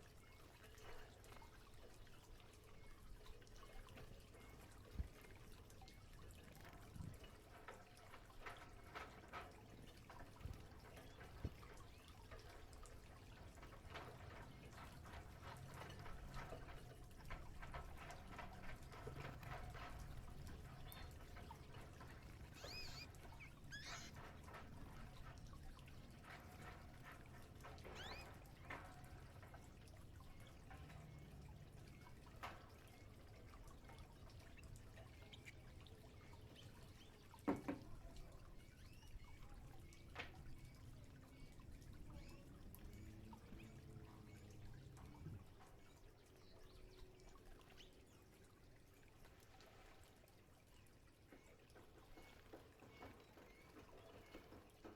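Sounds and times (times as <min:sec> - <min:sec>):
water trickling and splashing: 0:00.0 - 0:54.9
bird chirps: 0:22.6 - 0:24.2, 0:27.9 - 0:28.3.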